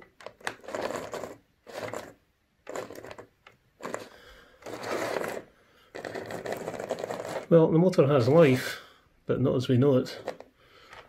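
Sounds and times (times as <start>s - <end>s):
small electric motor whirring: 3.8s - 5.4s.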